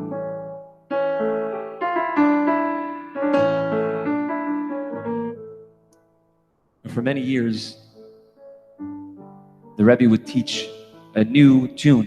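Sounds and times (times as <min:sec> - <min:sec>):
piano chords: 0:00.0 - 0:12.0.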